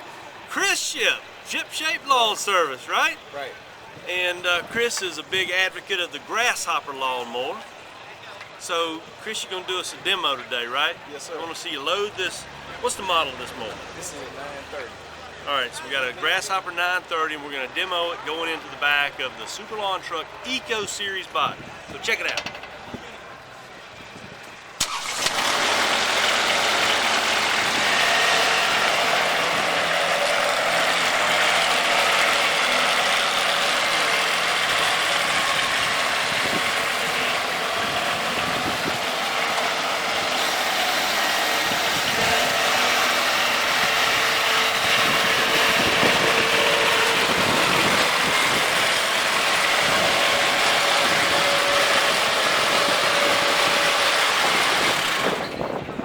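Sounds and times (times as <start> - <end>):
machinery whirring: 24.8 - 55.8.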